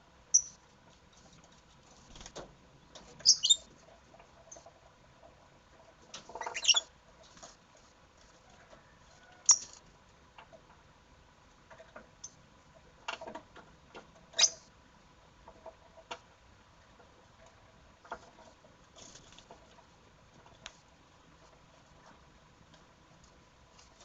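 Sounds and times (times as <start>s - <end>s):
birds shrill chirps: 3.2s - 3.7s, 6.4s - 6.9s, 14.4s - 14.6s.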